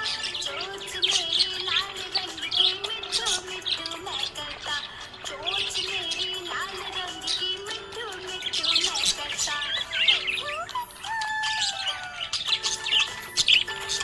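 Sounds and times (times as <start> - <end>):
background music with held notes: 0.0 - 14.0
budgies chirping and warbling: 0.0 - 14.0.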